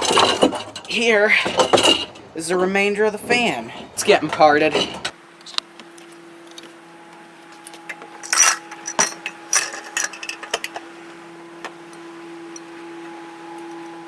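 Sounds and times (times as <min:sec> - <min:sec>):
ceiling fan parts clicking and rattling: 0:00.0 - 0:14.0
steady low hum: 0:05.2 - 0:11.6.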